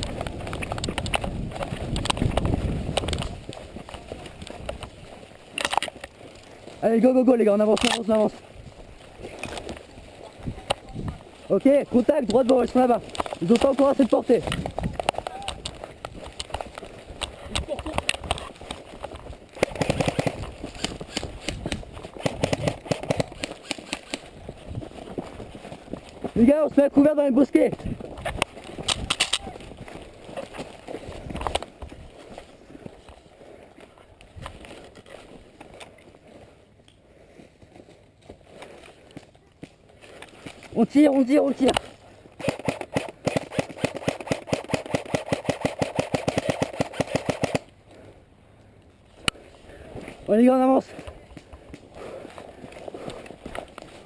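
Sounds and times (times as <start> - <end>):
gear clicking and rattling: 0.0 - 8.4, 9.2 - 33.2
quick footsteps on rough ground: 0.0 - 54.0
airsoft gun rapid firing: 19.6 - 24.2, 42.4 - 47.7.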